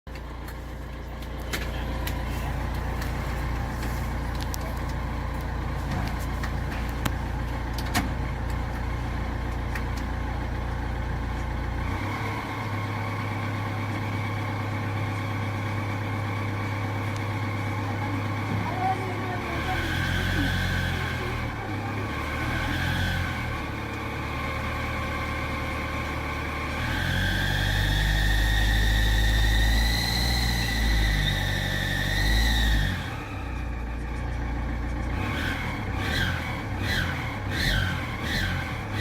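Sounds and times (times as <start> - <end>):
diesel engine running: 0.1 - 39.0
high turbo whistle: 27.0 - 33.9.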